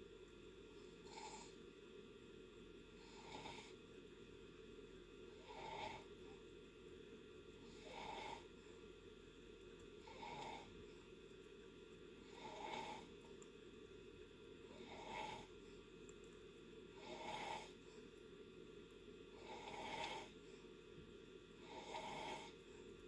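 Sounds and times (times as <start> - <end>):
faint snoring: 1.0 - 1.6, 2.9 - 3.9, 5.3 - 6.2, 7.6 - 8.6, 10.0 - 10.8, 12.2 - 13.2, 14.7 - 15.6, 16.9 - 17.9, 19.3 - 20.4, 21.6 - 22.7.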